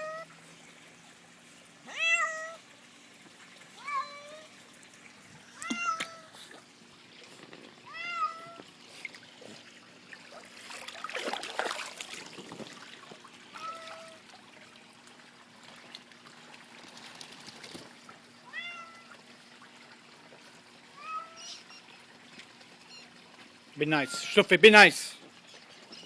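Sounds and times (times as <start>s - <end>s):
cat meowing: 1.9s - 2.6s, 3.8s - 4.5s, 5.6s - 6.4s, 7.9s - 8.6s, 18.5s - 19.0s.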